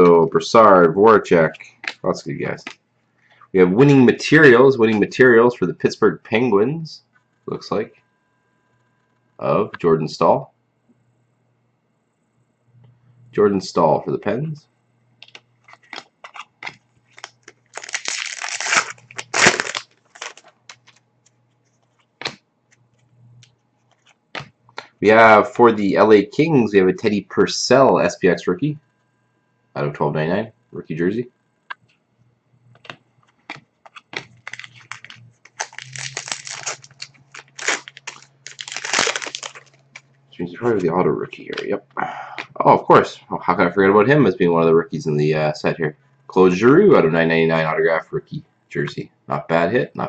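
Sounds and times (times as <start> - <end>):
cards clicking: 1.6 - 2.0, 15.2 - 21.0, 21.9 - 22.4, 32.7 - 40.0
wrapper crinkling and tearing: 15.3 - 22.4, 33.8 - 40.1.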